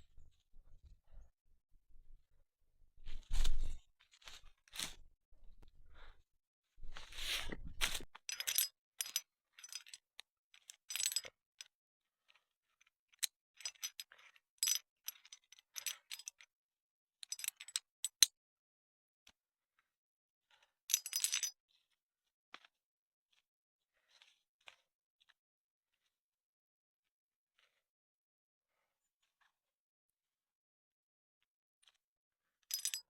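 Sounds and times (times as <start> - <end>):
handling rustle: 3.0 - 6.1, 6.8 - 8.1
metal objects clinking: 32.7 - 33.0.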